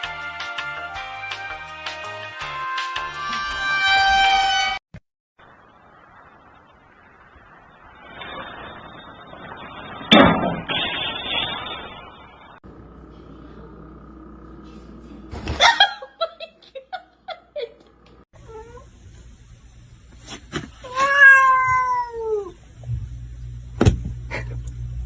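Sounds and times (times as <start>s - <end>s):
cat meowing: 20.8s - 22.6s.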